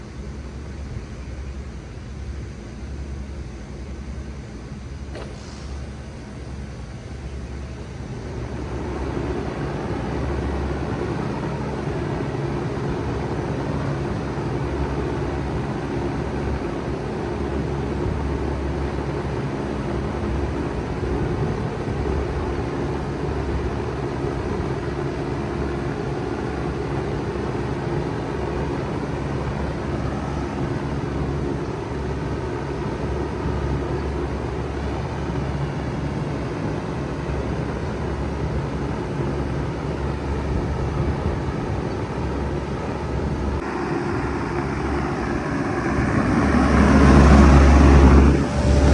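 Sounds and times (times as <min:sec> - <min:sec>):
heat pump humming: 0:05.0 - 0:48.9
rush of air: 0:43.6 - 0:48.9.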